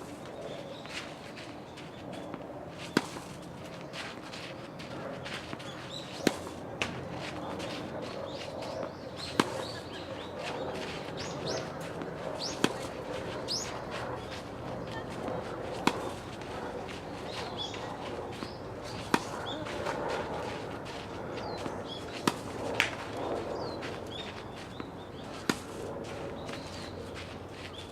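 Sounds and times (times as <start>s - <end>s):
tennis ball struck by racket: 2.9s - 3.4s, 6.1s - 7.0s, 12.4s - 12.9s, 18.4s - 19.5s, 21.6s - 23.0s, 25.4s - 25.8s.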